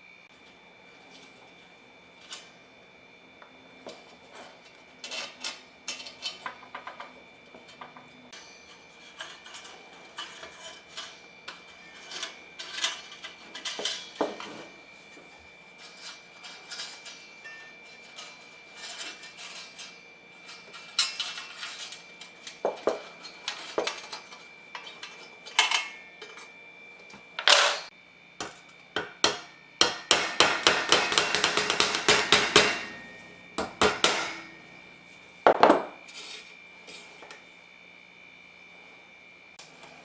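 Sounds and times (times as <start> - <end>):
metal parts clinking on workbench: 27.4 - 27.9.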